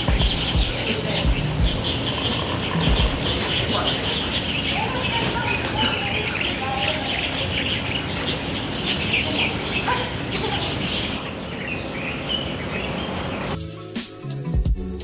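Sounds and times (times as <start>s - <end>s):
music: 0.0s - 6.3s, 13.5s - 15.0s
small birds chirping: 0.0s - 13.6s
steady background hiss: 0.0s - 13.6s.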